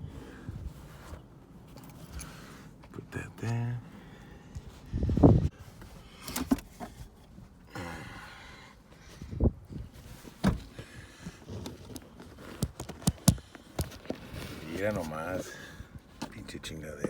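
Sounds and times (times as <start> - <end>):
objects being handled: 10.0 - 15.4.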